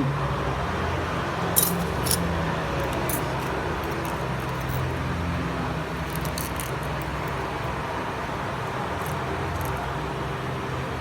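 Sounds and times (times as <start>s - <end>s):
low hum of road traffic: 0.0s - 11.0s
metallic clicks of hand tools: 1.6s - 2.2s.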